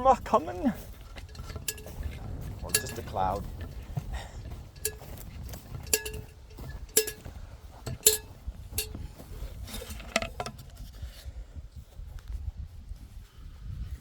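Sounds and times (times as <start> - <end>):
sharp metallic clinks: 1.3 - 9.2.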